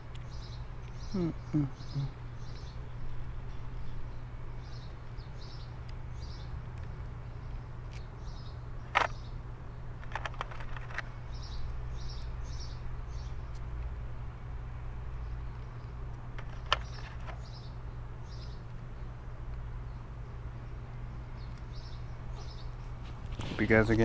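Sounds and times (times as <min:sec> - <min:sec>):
small birds chirping: 0:00.0 - 0:24.0
steady low hum: 0:00.0 - 0:24.0
sharp clicks: 0:10.0 - 0:11.2.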